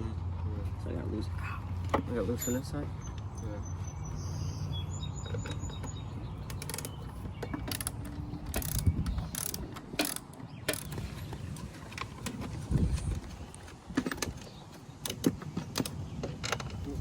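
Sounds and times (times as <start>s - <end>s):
sharp metal clicks: 5.2s - 11.1s
ratchet wrench clicking: 7.7s - 10.9s.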